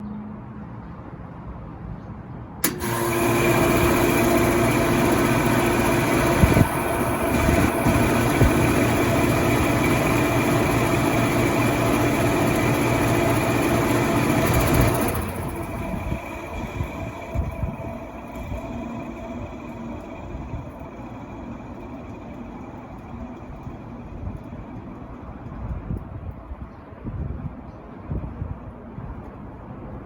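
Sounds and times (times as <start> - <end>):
air conditioner compressor and fan: 0.4 - 30.0
air conditioner switch click: 2.6 - 4.4
faint hum: 2.6 - 26.8.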